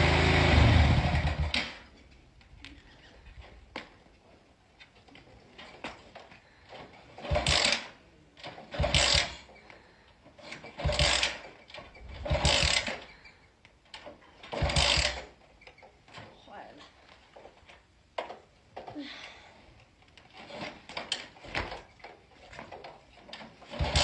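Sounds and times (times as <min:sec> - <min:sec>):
motorcycle engine kick-started: 0:00.0 - 0:02.0, 0:05.6 - 0:09.7, 0:10.4 - 0:16.0, 0:20.3 - 0:24.0.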